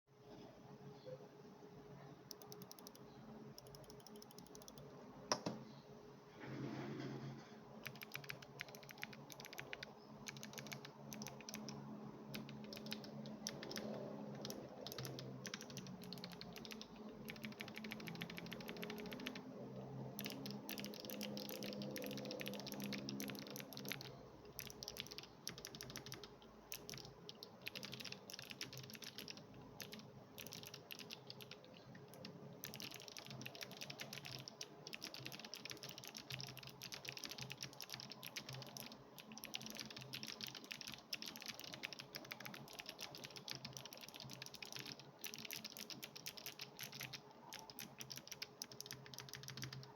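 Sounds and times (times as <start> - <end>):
faint low hum: 0.1 - 49.9
clicky keyboard typing: 2.3 - 5.6, 7.8 - 49.9.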